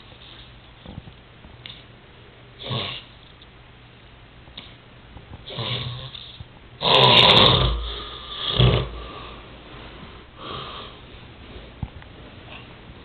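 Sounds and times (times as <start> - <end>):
person snoring: 6.8 - 9.4.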